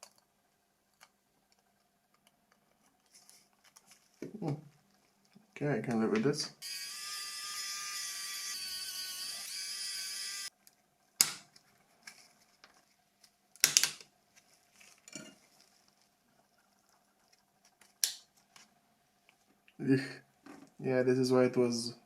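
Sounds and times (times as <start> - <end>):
small high-pitched motor whining: 6.6 - 10.5
plastic parts clicking and snapping: 13.5 - 14.1.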